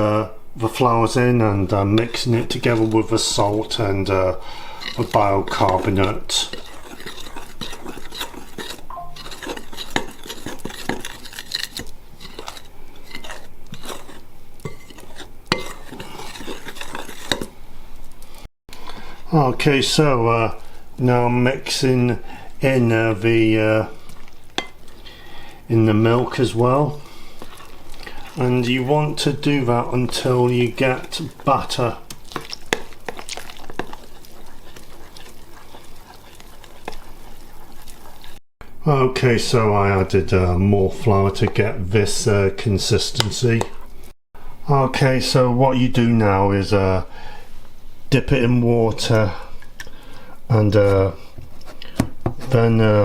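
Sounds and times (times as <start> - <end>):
utensil scraping a bowl: 1.2 - 17.6, 20.5 - 38.4.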